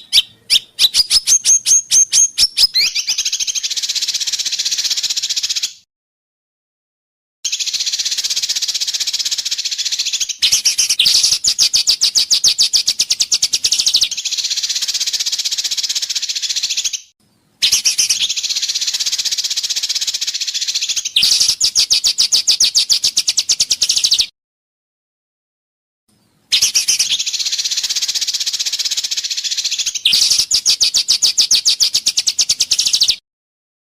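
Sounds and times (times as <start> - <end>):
bird rapid repeated notes: 0.0 - 5.5.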